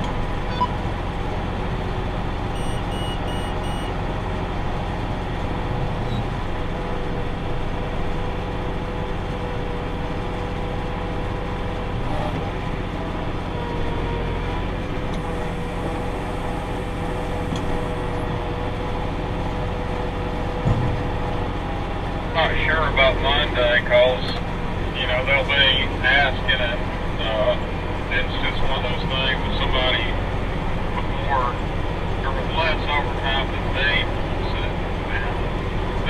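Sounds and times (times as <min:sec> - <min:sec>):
tractor and baler running: 0:00.0 - 0:36.0
quick beeps: 0:00.5 - 0:00.8, 0:02.6 - 0:03.9.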